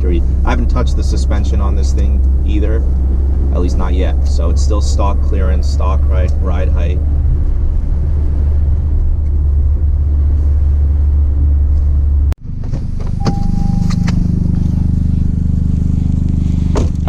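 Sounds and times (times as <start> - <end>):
car engine droning: 0.0 - 17.0
higher engine note: 0.0 - 17.0
short high tone: 13.2 - 14.1.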